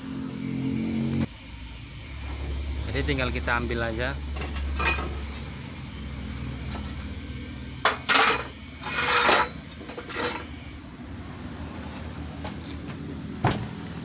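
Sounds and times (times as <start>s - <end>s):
metal scraping and clattering: 4.3s - 5.6s, 7.8s - 10.7s.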